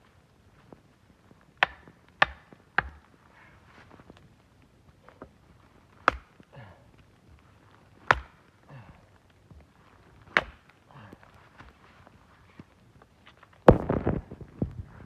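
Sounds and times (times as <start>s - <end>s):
wood being chopped: 1.6s - 3.1s, 6.0s - 6.4s, 8.0s - 8.5s, 10.3s - 10.7s.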